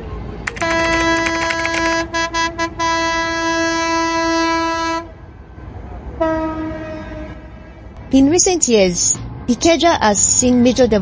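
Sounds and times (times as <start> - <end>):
train horn blast: 2.2 - 5.1, 6.2 - 7.6.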